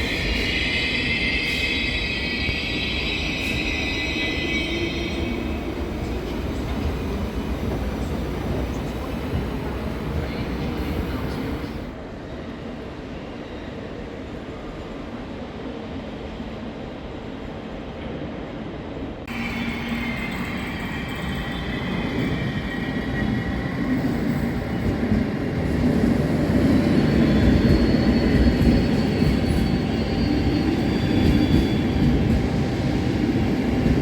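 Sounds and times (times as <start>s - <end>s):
train wheel squeal: 0.0s - 7.4s, 19.3s - 34.0s
train rumbling on rails: 0.0s - 34.0s.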